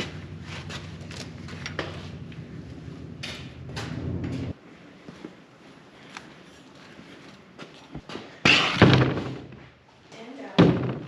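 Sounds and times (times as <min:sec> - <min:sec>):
low steady hum: 0:00.0 - 0:05.0.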